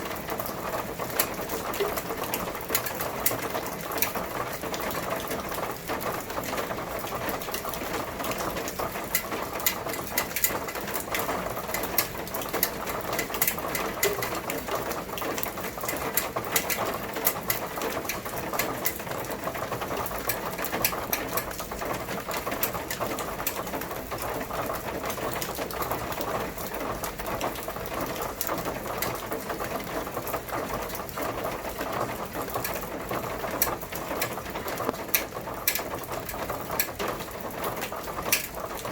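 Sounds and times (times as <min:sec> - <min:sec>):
rain on hard surface: 0:00.0 - 0:38.9.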